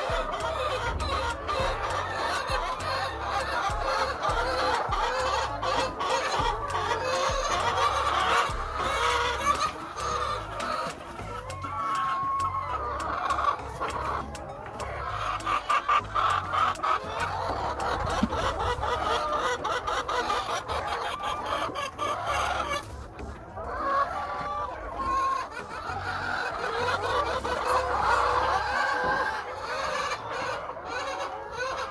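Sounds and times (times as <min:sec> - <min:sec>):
hens clucking: 0:00.0 - 0:31.9.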